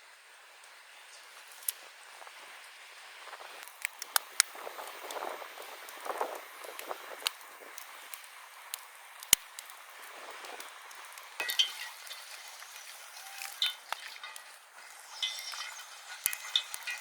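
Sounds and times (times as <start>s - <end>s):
fish sizzling in hot oil: 0.1s - 17.0s
utensil clinking against pan: 11.4s - 12.1s, 15.1s - 17.0s.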